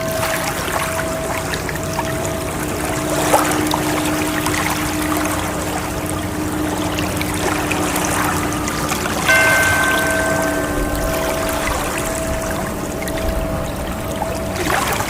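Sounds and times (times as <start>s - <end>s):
soft held musical tones: 0.0s - 15.0s
rushing splashing water: 9.3s - 15.0s.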